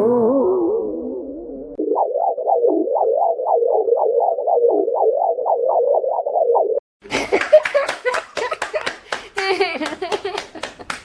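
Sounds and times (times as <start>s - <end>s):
synthesizer warbling pulses: 0.0s - 6.8s.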